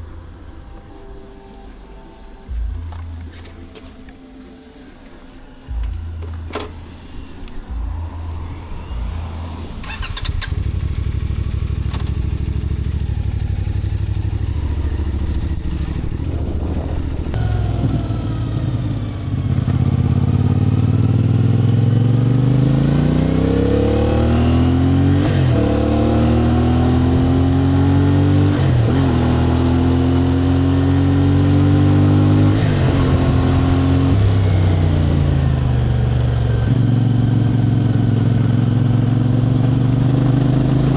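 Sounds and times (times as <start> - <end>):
vehicle engine accelerating: 5.6 - 40.9.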